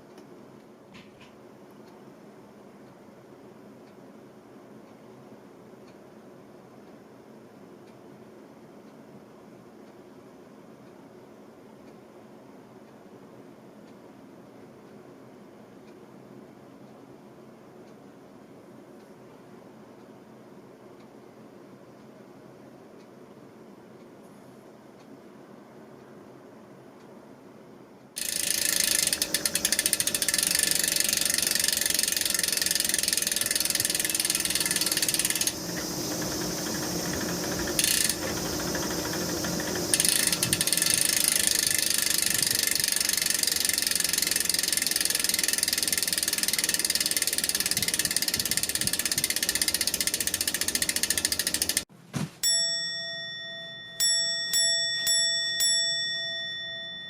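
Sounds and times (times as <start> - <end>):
bike drivetrain ratchet clicking: 28.2 - 51.9.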